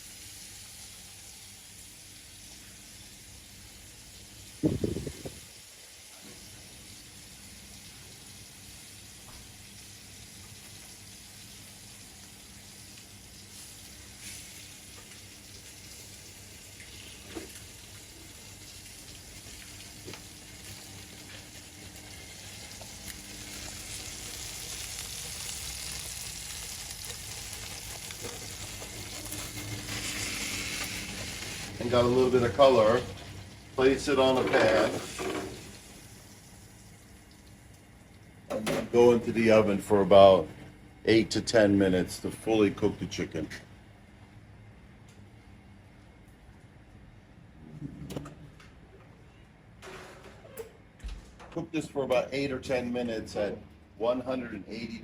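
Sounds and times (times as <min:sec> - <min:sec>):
chicken sizzling in a pan: 0:00.0 - 0:37.3.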